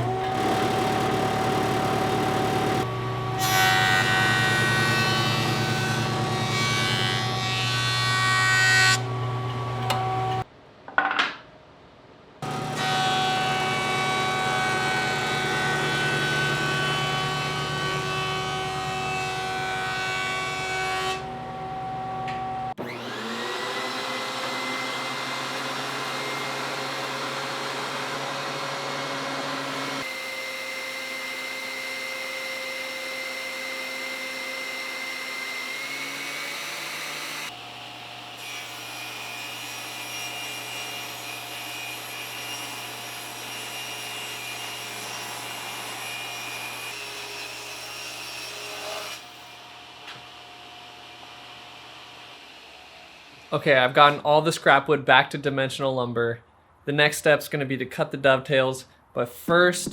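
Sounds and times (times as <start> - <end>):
power tool machine whine: 0.0 - 8.2, 12.4 - 43.5.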